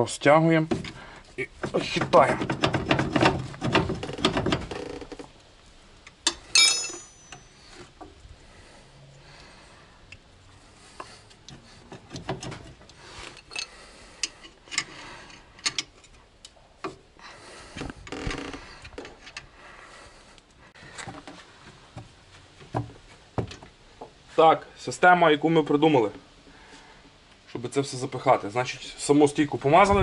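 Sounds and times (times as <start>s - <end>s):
car strut knocking and rubbing: 0.7s - 5.2s, 11.6s - 12.9s.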